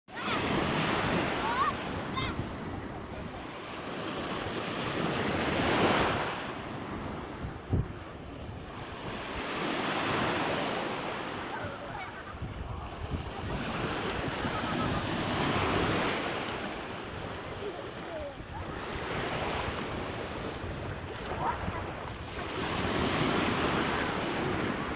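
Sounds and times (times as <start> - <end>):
sea waves breaking: 0.1 - 24.9
wind buffeting microphone: 4.9 - 9.3, 11.6 - 24.9.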